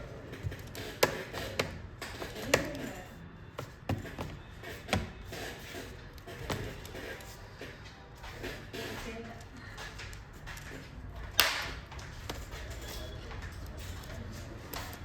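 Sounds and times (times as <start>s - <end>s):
plastic clips snapping into place: 11.4s - 11.8s.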